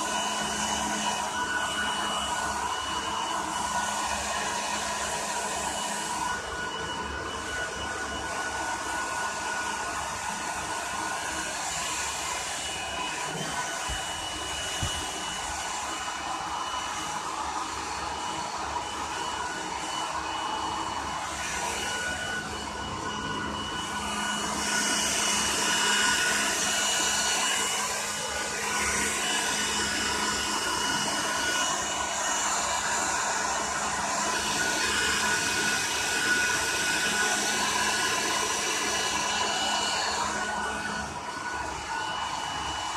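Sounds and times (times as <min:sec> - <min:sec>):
hair dryer blowing: 0:00.0 - 0:42.9.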